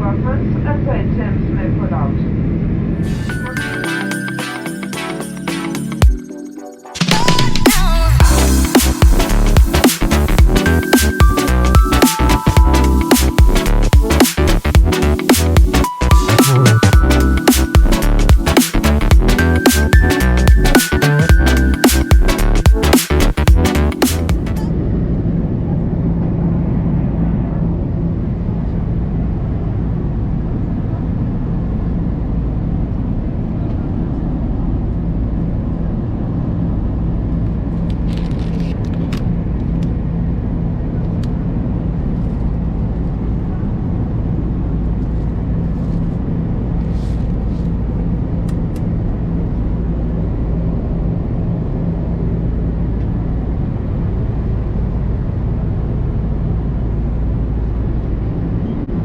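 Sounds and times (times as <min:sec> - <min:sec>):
aircraft cabin engine rumble: 0:24.6 - 0:59.0.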